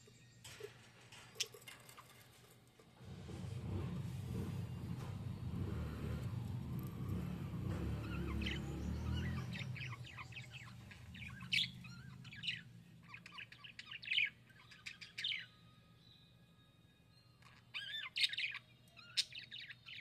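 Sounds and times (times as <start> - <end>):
budgerigar chirping: 8.5 - 15.5.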